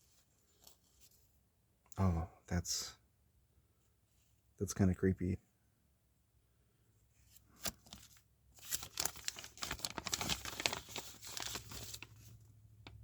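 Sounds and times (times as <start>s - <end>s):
paper crinkling and rustling: 7.4s - 13.0s.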